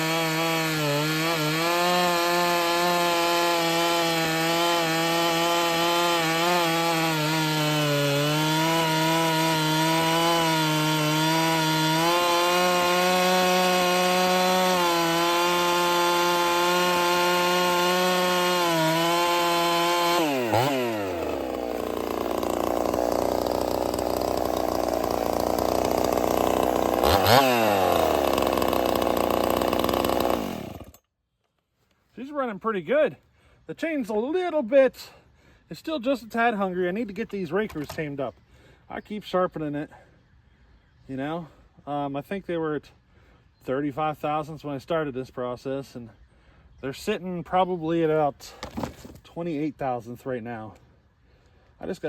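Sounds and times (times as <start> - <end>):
chainsaw cutting wood: 0.0 - 31.0, 48.4 - 49.3
chainsaw idling: 0.0 - 31.0.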